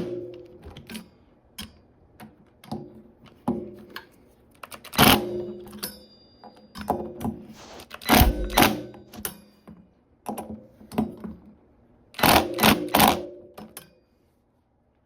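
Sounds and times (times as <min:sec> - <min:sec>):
loud knock: 0:07.6 - 0:08.9.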